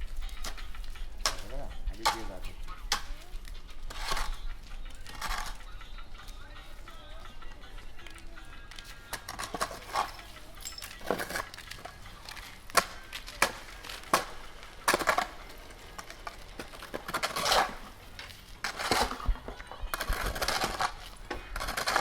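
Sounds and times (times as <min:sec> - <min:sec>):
rubble scraping: 0:03.8 - 0:05.7, 0:09.1 - 0:10.3, 0:10.9 - 0:22.0
rubble knocking and clinking: 0:09.0 - 0:12.9.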